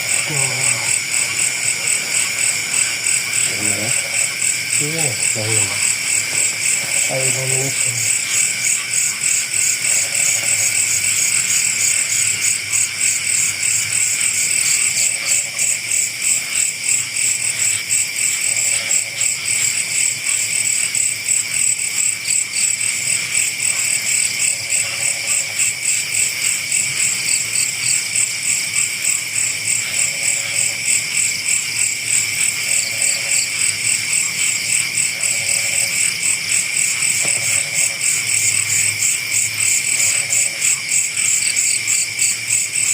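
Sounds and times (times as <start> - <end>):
low frog calls: 0.0 - 11.7, 35.0 - 36.2, 37.0 - 38.9
crickets chirping: 0.0 - 42.9.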